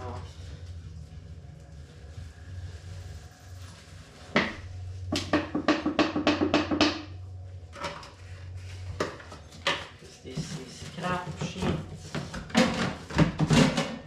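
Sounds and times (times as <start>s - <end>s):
low steady hum: 0.0s - 14.0s
sharp knocks on hollow surface: 5.2s - 7.1s.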